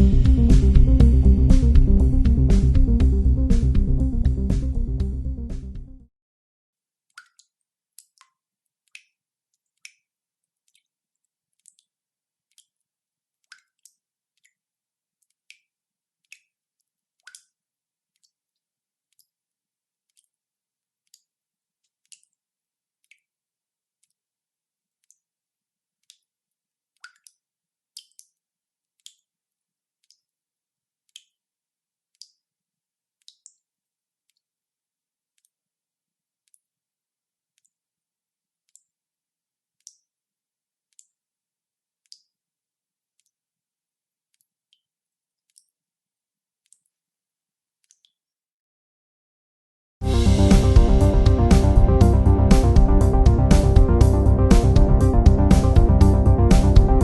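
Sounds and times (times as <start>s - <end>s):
water dripping: 7.1s - 12.8s, 13.4s - 14.6s, 15.2s - 16.6s, 17.2s - 18.4s, 22.0s - 22.4s, 26.0s - 26.3s, 27.0s - 29.3s, 30.0s - 30.3s, 31.1s - 31.4s, 32.1s - 32.4s, 33.2s - 33.6s, 39.8s - 40.1s, 42.0s - 42.4s, 44.3s - 45.8s, 47.8s - 48.2s, 50.4s - 57.0s.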